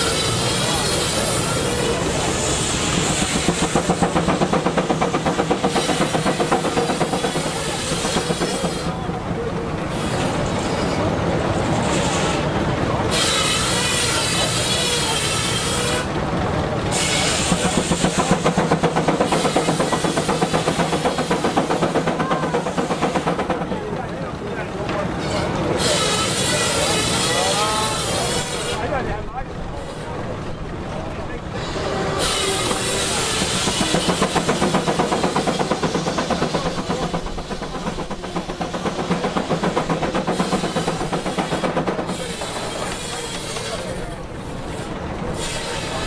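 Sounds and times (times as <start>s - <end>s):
steam hiss: 0.0s - 9.0s, 13.1s - 16.1s, 16.9s - 23.4s, 25.8s - 28.8s, 31.6s - 46.0s
steam engine exhaust chuffing: 0.0s - 46.0s.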